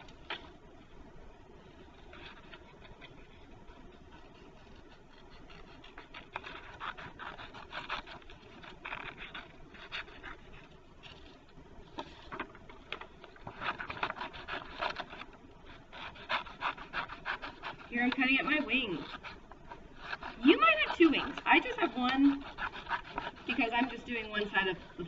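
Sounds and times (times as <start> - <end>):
scissors snipping paper: 4.2 - 10.7, 13.5 - 25.0.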